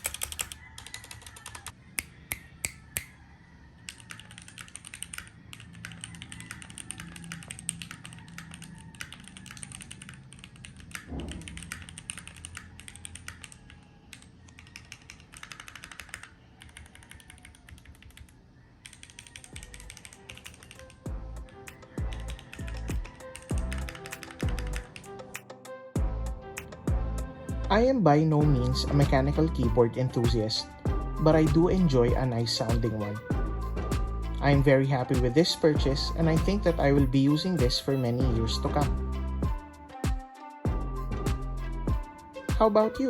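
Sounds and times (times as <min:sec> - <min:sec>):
mechanical keyboard key clicks: 0:00.0 - 0:01.7.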